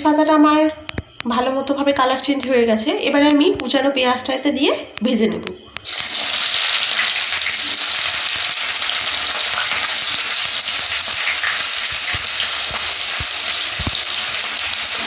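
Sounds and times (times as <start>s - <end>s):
onion sizzling in oil: 5.8s - 15.0s.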